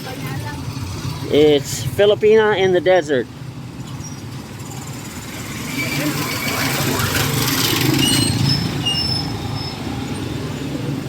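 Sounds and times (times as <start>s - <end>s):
vehicle engine passing by: 4.4s - 11.0s.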